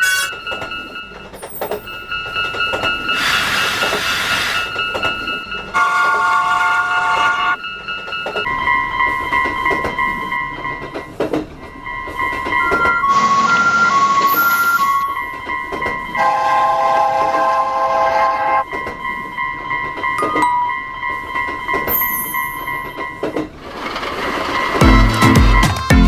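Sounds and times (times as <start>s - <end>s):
train wheels clicking over rail joints: 0.0s - 17.9s, 18.6s - 25.9s
level crossing bells ringing: 0.0s - 25.9s
train horn chord: 16.2s - 18.6s.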